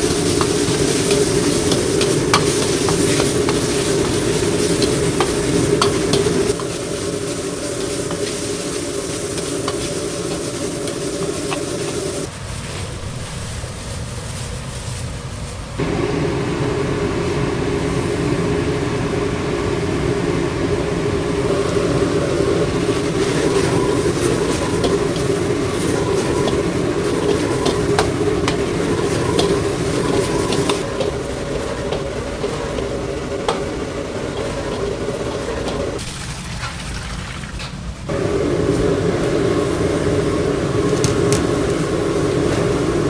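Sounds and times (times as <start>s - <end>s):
utensils and dishes clattering: 0.0s - 12.3s, 21.8s - 38.2s, 40.9s - 41.8s
kitchen rumbling roar: 0.0s - 43.0s.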